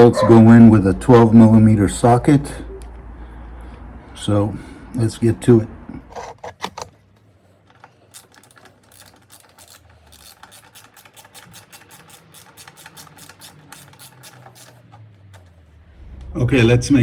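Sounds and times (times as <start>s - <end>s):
socket ratchet clicking: 7.8s - 15.6s.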